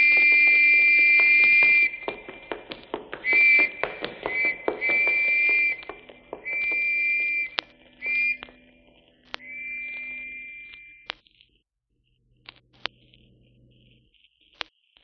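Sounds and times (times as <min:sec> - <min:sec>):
police whistle blasts: 0:00.0 - 0:02.3, 0:03.2 - 0:11.1.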